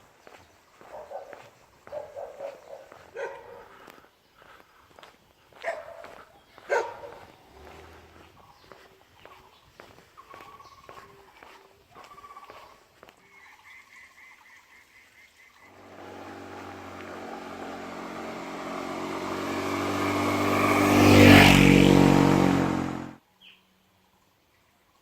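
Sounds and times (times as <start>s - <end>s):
vehicle engine driving past: 7.4s - 8.3s, 15.7s - 23.2s.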